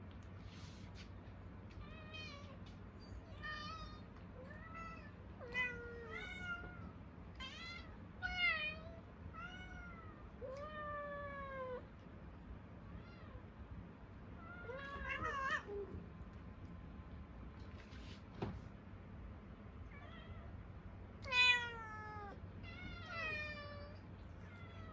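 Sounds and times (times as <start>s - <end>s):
cats meowing: 1.8s - 11.8s, 14.4s - 16.0s, 21.2s - 24.9s.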